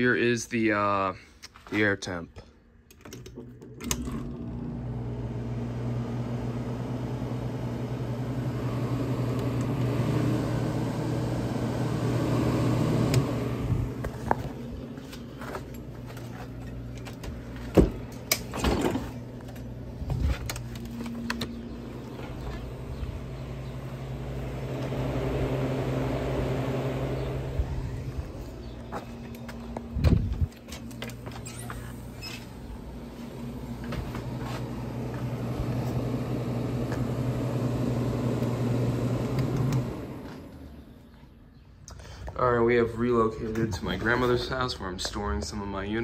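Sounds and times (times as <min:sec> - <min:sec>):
air conditioner humming: 0:00.0 - 0:46.0.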